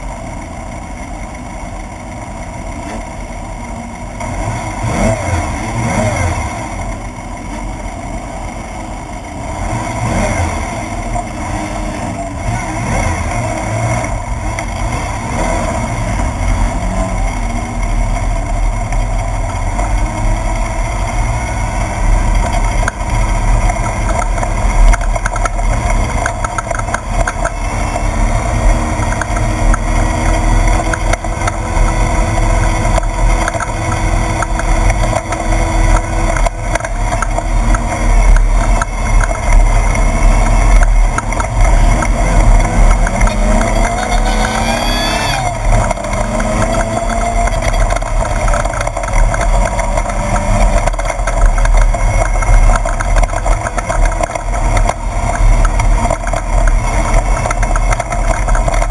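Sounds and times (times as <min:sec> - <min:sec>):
buggy engine running hard: 0:00.0 - 0:58.9.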